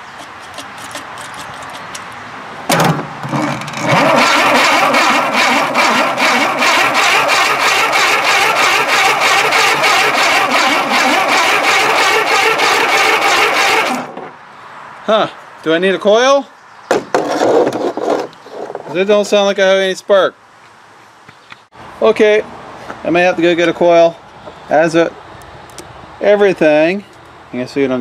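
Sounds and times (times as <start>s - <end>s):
engine cranking by starter: 2.7s - 14.2s.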